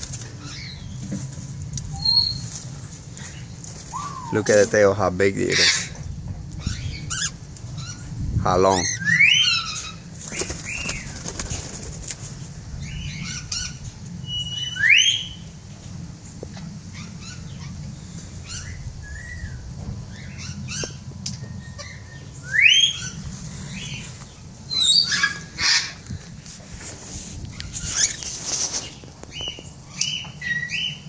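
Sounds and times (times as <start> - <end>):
wing flapping: 0.0 - 1.6, 10.0 - 12.7, 25.2 - 29.5
bird whistled calls: 1.9 - 2.4, 3.9 - 4.5, 8.8 - 10.0, 14.2 - 15.4, 20.2 - 23.2, 24.7 - 26.0.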